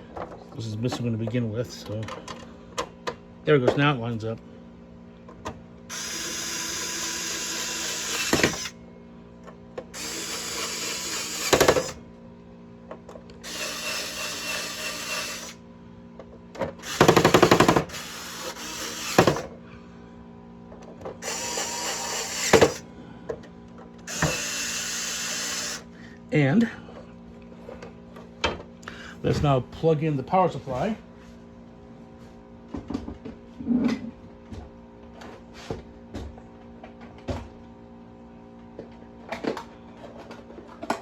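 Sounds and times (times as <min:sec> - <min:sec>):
electric drill driving screws: 0:05.9 - 0:08.8, 0:10.0 - 0:12.0, 0:13.4 - 0:15.6, 0:16.8 - 0:19.5, 0:21.2 - 0:22.8, 0:24.0 - 0:25.9.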